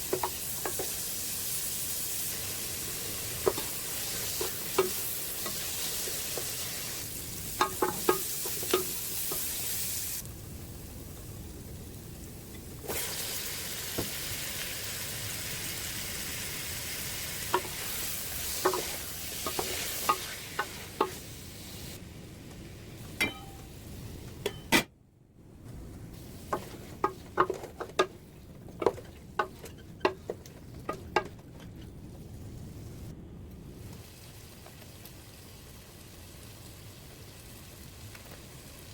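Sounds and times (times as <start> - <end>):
food sizzling in a pan: 0.0 - 22.0, 26.2 - 27.8
spoon scraping a pan: 17.5 - 21.2.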